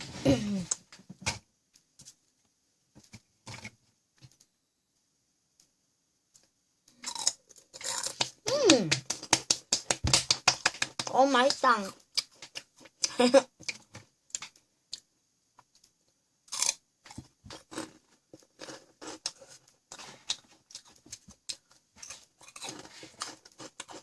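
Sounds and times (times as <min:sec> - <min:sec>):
crunchy snacks being chewed: 0:07.0 - 0:09.4, 0:16.5 - 0:24.0
person humming: 0:08.5 - 0:09.1.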